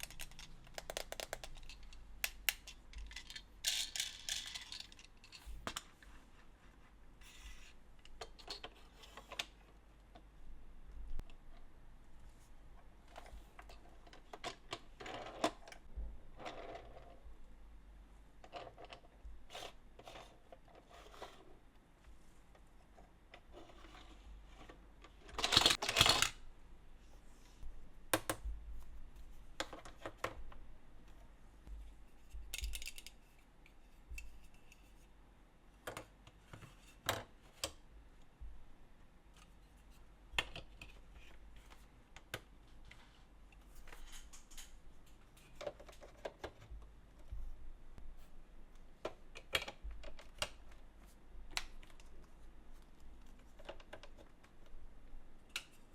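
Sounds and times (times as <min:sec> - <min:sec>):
plastic toy pieces clattering: 0:00.0 - 0:05.5, 0:25.3 - 0:26.4.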